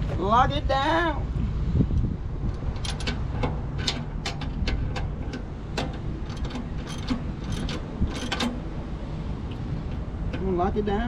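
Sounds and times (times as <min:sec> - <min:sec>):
steady low rumble: 0:00.0 - 0:11.0
ratchet wrench clicking: 0:02.5 - 0:08.6.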